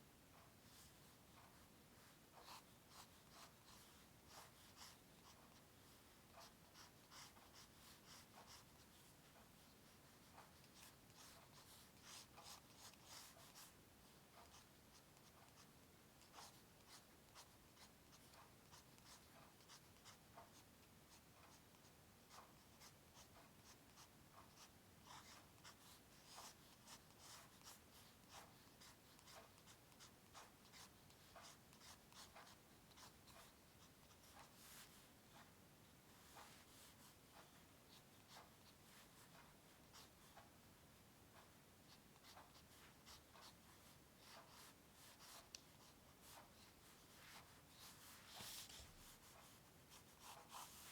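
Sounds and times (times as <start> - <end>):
drawing tool scratching on paper: 22.4 - 35.1, 42.2 - 50.9.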